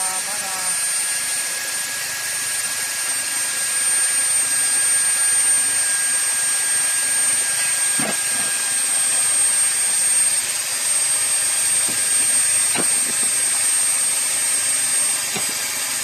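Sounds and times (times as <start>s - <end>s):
electric pile driver whining: 0.0s - 16.0s.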